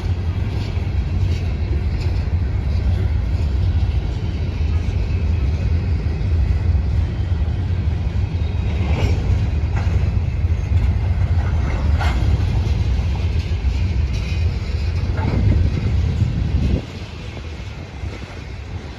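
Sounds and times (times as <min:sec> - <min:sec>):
train wheels rumbling on rails: 0:00.0 - 0:18.9
sharp train knocks: 0:08.7 - 0:18.9.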